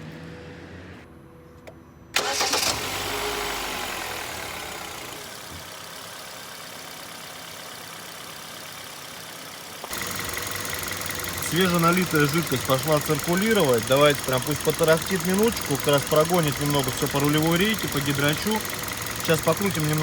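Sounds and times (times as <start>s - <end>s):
starter cranking engine: 2.2s - 3.2s, 9.8s - 20.0s
car engine idling: 2.2s - 20.0s.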